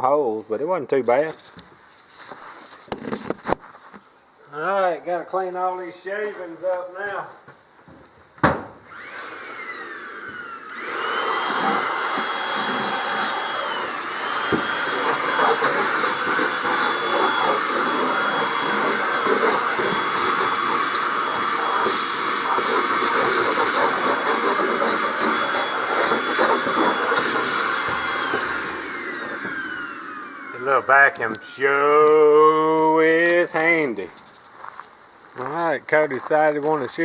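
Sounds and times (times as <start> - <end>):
vacuum cleaner whining: 8.8 - 33.8.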